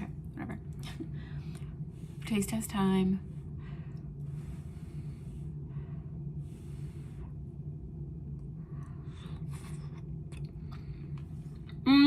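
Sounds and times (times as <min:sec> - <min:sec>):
steady low hum: 0:00.0 - 0:12.0
person breathing puffs: 0:03.4 - 0:07.5.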